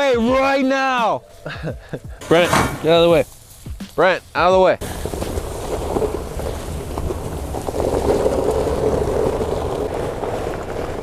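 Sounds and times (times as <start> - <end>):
towing vehicle engine rumbling: 0.0 - 11.0
car scraping over ground: 4.8 - 11.0.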